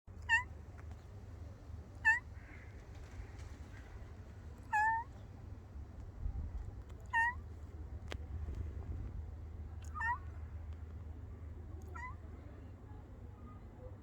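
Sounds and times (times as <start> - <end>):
cat meowing: 0.2 - 0.5, 2.0 - 2.3, 4.7 - 5.1, 7.1 - 7.4, 9.8 - 10.3, 11.9 - 12.2.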